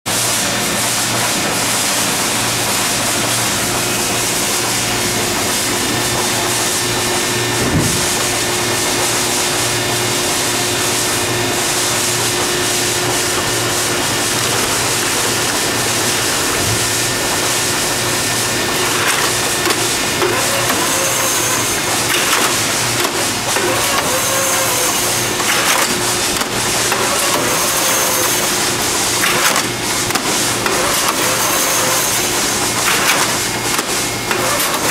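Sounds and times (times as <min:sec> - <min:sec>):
baler machine humming: 0:00.2 - 0:34.9
machine knocks and squeals: 0:20.2 - 0:22.7, 0:23.6 - 0:25.8.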